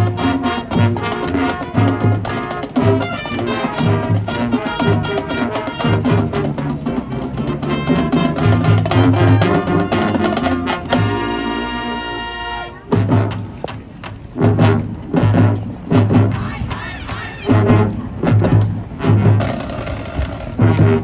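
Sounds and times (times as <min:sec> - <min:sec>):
marching band brass: 0:00.0 - 0:21.0
heavy drum hits: 0:19.4 - 0:21.0.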